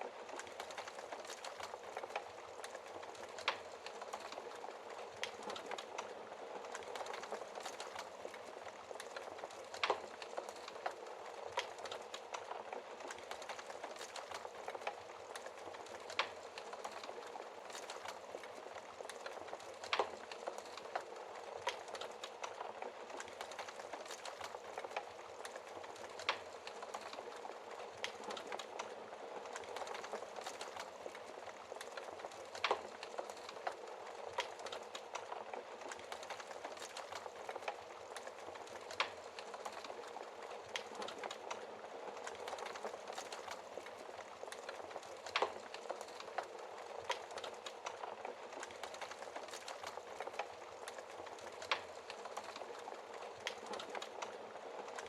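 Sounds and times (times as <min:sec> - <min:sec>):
wood fire crackling: 0:00.0 - 0:55.0
burning wood popping: 0:00.2 - 0:55.0.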